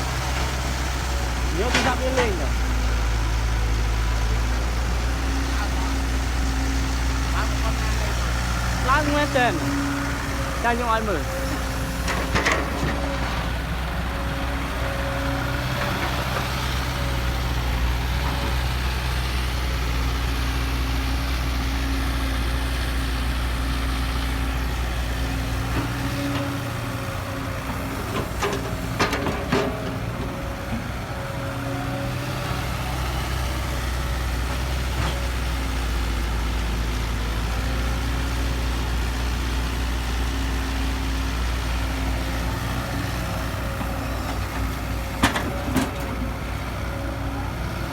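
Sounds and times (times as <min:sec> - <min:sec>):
diesel engine droning: 0:00.0 - 0:47.9.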